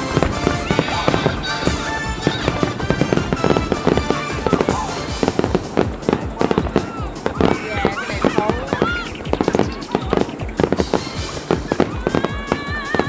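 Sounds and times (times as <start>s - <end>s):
firework shells bursting: 0.0s - 13.0s
fireworks crackling: 0.0s - 13.0s
music playing: 0.0s - 13.0s.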